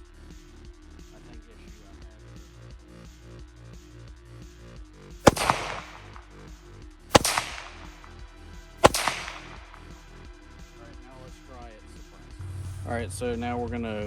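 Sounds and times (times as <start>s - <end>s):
faint background music: 0.0s - 14.0s
pistol shots with echo: 5.2s - 6.3s, 7.1s - 8.2s, 8.8s - 10.0s.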